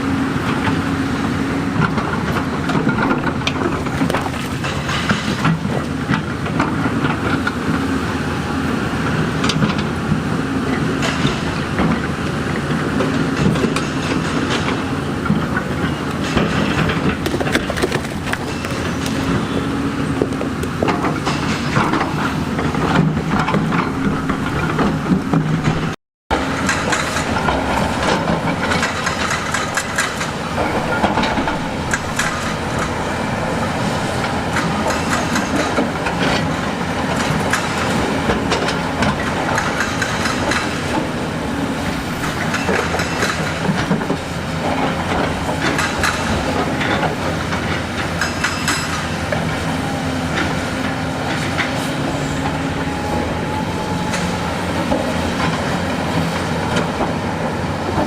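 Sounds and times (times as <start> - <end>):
diesel engine running: 0.0 - 48.2, 48.9 - 58.0
clanking of metal and rock: 13.1 - 41.2.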